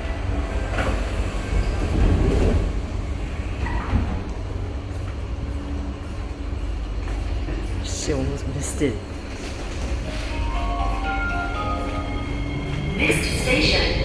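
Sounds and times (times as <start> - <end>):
train running rumble: 0.0 - 14.0.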